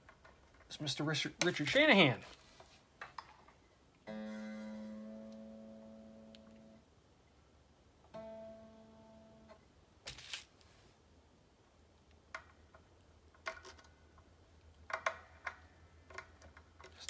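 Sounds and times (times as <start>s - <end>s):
guitar string plucked: 4.1s - 6.8s, 8.1s - 9.6s
light clicks and taps of tools: 12.0s - 17.0s.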